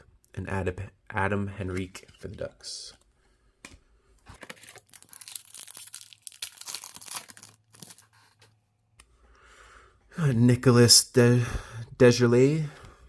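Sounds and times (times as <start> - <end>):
card pack wrapper crinkling: 4.3 - 8.4.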